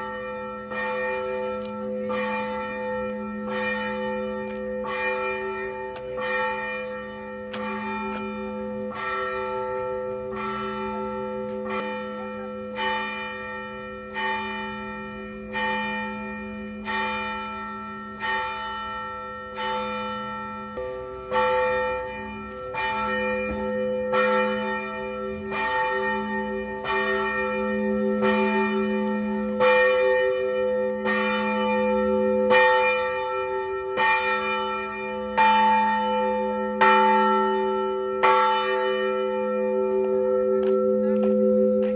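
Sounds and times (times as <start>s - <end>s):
large bells ringing: 0.0s - 41.9s
small church bells struck: 0.0s - 41.9s.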